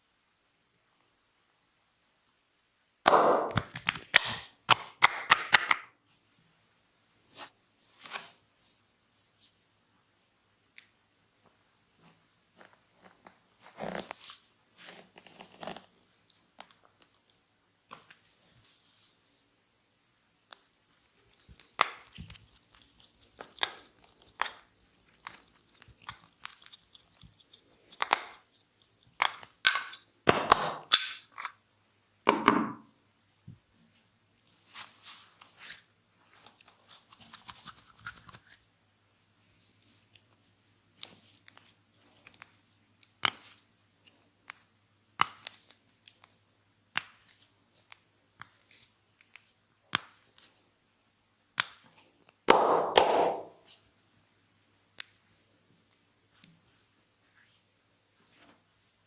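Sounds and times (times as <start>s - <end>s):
massage slaps and pats: 3.1s - 5.9s, 52.5s - 53.7s
hands rubbing skin: 36.6s - 38.6s.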